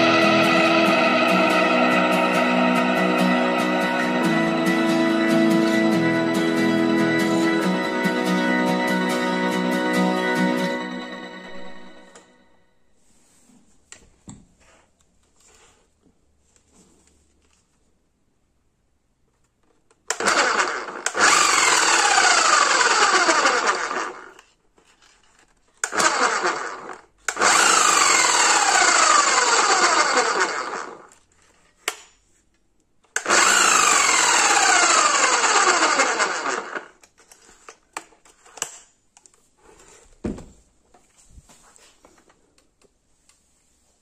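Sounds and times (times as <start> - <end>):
demolition hammer running: 20.2 - 24.3, 25.9 - 31.0, 33.2 - 36.9.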